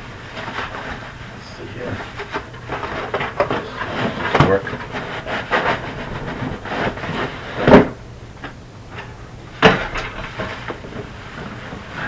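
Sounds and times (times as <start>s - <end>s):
plastic packaging rustling: 0.0s - 8.1s.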